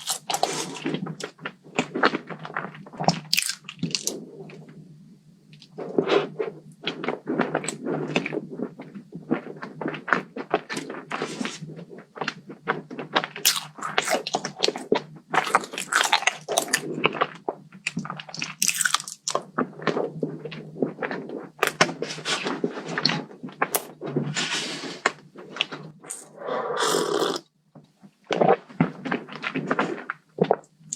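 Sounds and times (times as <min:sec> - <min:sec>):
crunchy dessert chewing: 0:00.0 - 0:04.6, 0:05.7 - 0:21.9.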